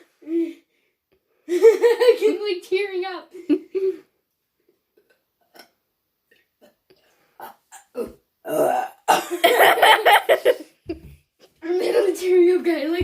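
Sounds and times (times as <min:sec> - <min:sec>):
girl burping: 0:07.4 - 0:09.6.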